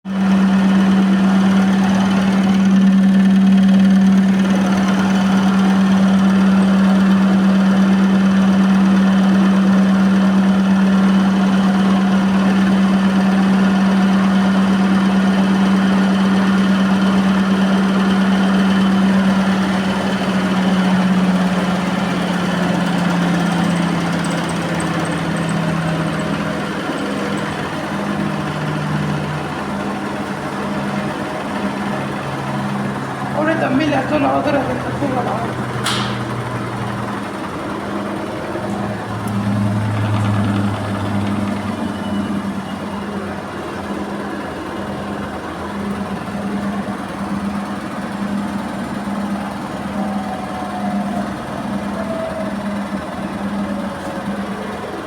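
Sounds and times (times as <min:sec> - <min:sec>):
washing machine spinning hum: 0:00.0 - 0:55.0
mechanical din: 0:39.2 - 0:42.3.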